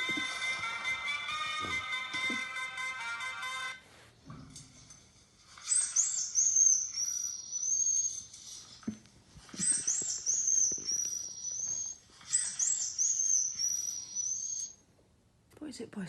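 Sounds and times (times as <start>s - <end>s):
high-pitched chirping whistle: 5.6s - 8.3s, 9.6s - 14.8s.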